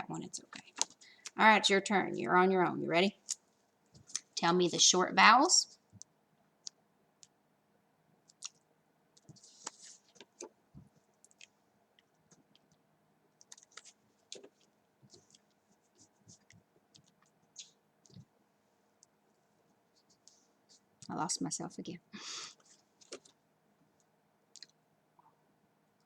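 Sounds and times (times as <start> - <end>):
small soft noises: 2.2 - 26.0.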